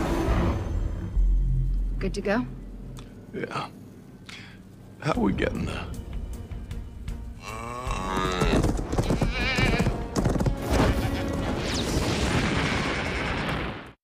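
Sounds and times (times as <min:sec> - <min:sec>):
goats screaming: 0:07.8 - 0:10.0, 0:12.4 - 0:13.6.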